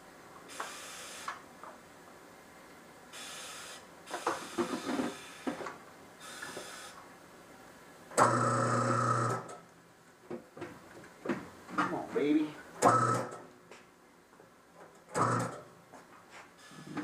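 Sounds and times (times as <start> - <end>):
short hisses: 3.2 - 5.5.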